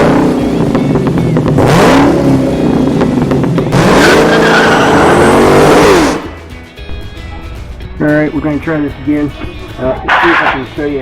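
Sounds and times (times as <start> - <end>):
car engine revving: 0.0 - 6.5.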